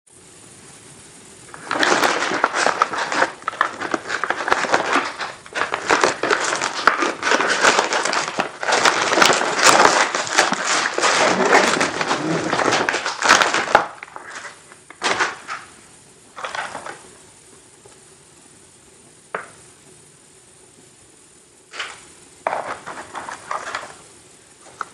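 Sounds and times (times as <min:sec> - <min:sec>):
plastic packaging crinkling: 0:01.5 - 0:17.1, 0:21.7 - 0:24.9.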